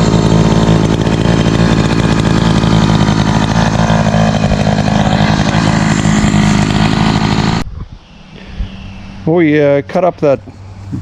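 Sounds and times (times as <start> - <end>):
chainsaw cutting log: 0.0 - 7.6.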